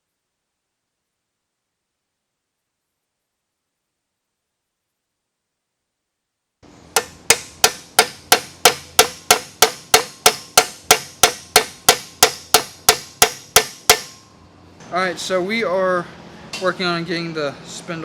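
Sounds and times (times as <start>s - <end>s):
hammer blows on steel: 7.0s - 14.2s.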